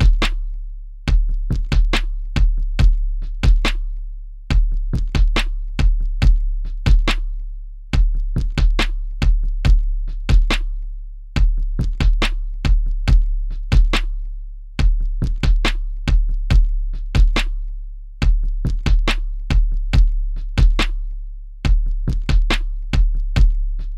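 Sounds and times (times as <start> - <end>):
snappy percussion hits: 0.0 - 0.4, 4.5 - 7.2, 8.0 - 10.7, 18.2 - 21.0, 21.7 - 23.9
deep bass kick drum: 0.0 - 23.9.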